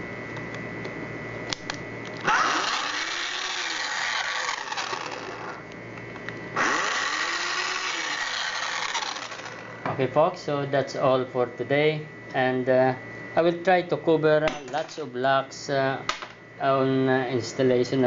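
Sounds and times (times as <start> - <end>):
small power tool motor: 2.2 - 5.7, 6.6 - 9.8.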